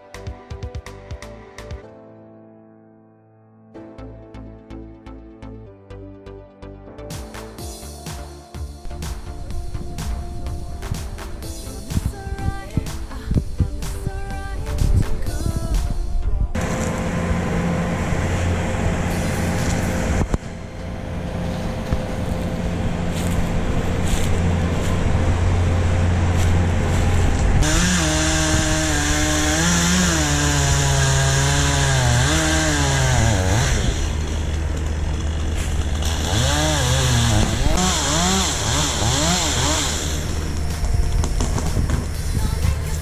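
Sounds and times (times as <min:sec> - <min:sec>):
background music: 0:00.0 - 0:43.0
person singing: 0:07.6 - 0:16.9, 0:39.0 - 0:43.0
chainsaw running: 0:16.6 - 0:42.9.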